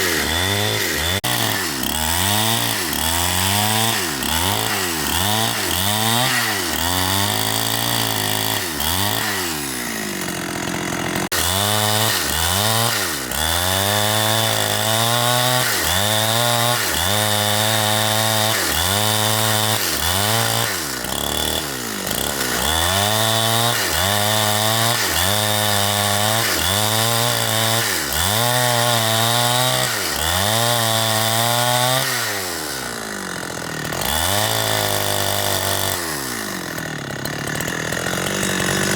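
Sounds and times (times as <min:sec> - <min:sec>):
chainsaw engine revving: 0:00.0 - 0:38.9.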